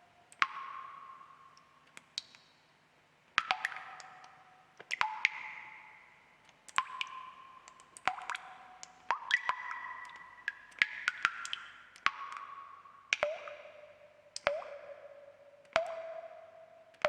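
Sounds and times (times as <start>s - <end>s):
water drops plinking: 6.8s - 17.0s.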